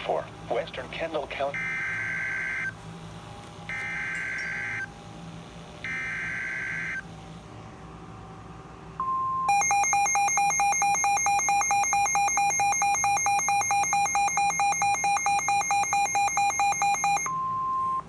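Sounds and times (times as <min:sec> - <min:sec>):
short steady beep: 0:09.0 - 0:18.0.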